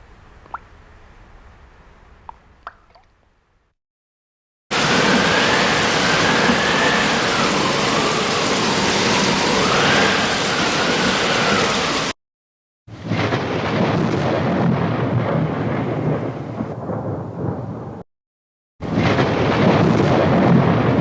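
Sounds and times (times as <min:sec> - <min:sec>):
dense rushing water: 0:04.7 - 0:12.2.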